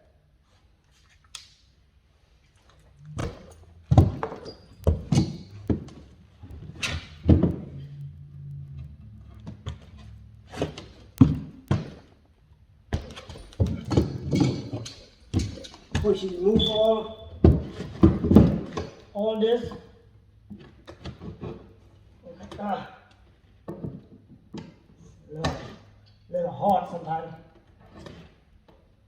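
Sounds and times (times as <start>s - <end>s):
wooden stair parts knocking: 12.9s - 19.0s.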